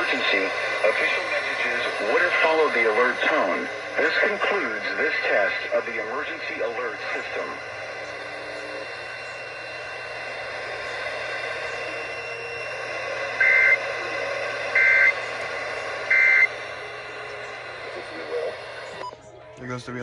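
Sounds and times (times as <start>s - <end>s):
broadcast hiss: 0.0s - 19.1s
two-tone digital data bursts: 0.0s - 19.2s.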